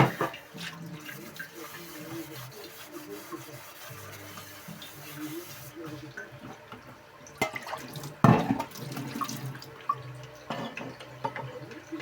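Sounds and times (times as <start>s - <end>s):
frying pan being scrubbed: 0.0s - 6.2s
water running from a tap: 0.0s - 12.0s.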